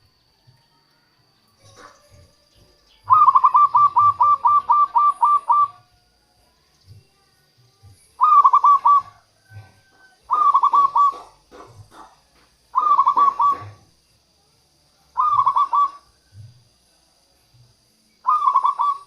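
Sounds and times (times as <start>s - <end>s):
dove cooing fluty notes: 0.7s - 6.2s, 7.8s - 14.0s, 15.1s - 16.8s, 18.2s - 19.0s.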